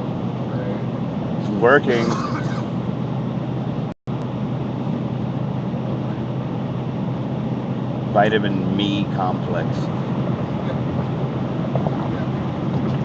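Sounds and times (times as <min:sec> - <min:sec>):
car road and engine noise: 0:00.0 - 0:13.0.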